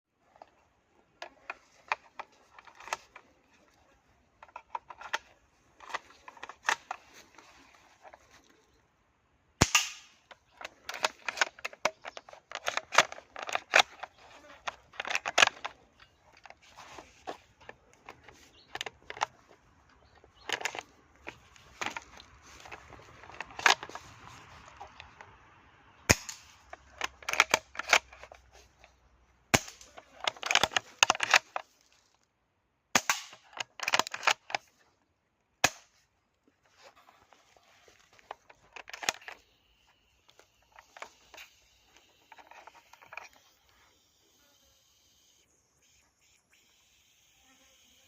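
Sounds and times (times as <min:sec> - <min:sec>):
airsoft rifle shot: 0:09.6 - 0:10.2, 0:26.1 - 0:26.5, 0:33.0 - 0:33.3
rifle mechanism clicking: 0:09.6 - 0:16.6.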